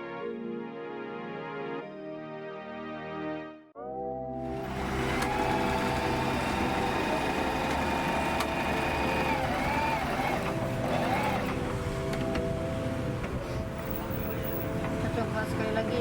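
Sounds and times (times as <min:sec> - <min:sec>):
sewing machine motor whining: 0:04.6 - 0:12.3
needle stitching: 0:04.7 - 0:11.6.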